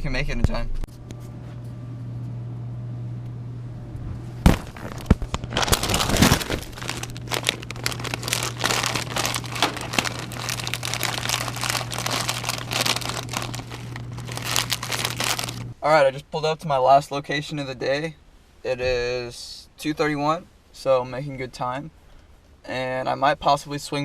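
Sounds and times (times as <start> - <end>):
steady low hum: 0.0 - 23.8
plastic bag crinkling: 4.4 - 15.7.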